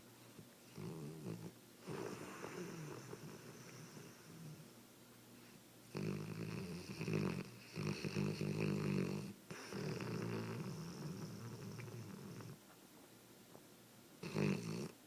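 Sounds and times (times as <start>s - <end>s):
pet snoring: 0.6s - 4.7s, 5.9s - 12.6s, 14.2s - 15.0s.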